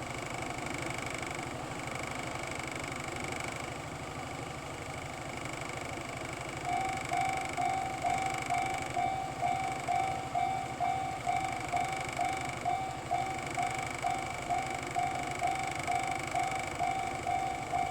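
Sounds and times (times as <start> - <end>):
level crossing bell ringing: 6.6 - 17.9
steady low hum: 6.6 - 17.9.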